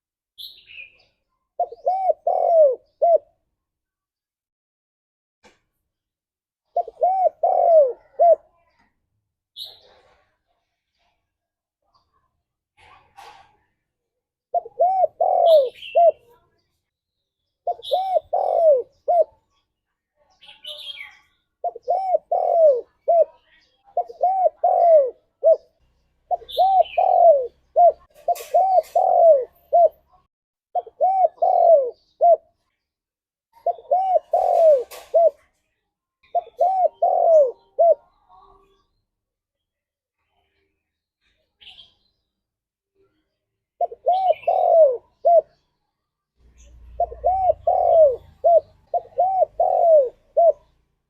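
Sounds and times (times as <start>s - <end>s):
faint higher bird chirps: 0.4s - 3.4s, 14.5s - 30.2s, 36.2s - 50.9s
dove cooing: 1.6s - 3.4s, 6.7s - 8.6s, 14.5s - 16.3s, 17.6s - 19.4s, 21.6s - 23.4s, 24.0s - 30.1s, 30.8s - 32.5s, 33.6s - 35.5s, 36.2s - 38.2s, 43.8s - 45.6s, 46.5s - 50.8s.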